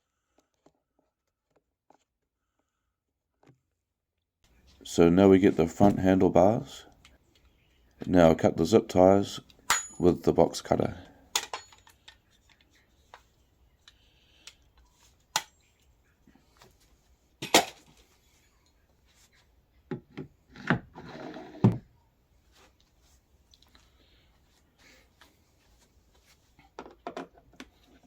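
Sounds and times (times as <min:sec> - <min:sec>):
plastic parts clicking and knocking: 0:11.4 - 0:13.3, 0:26.7 - 0:28.0.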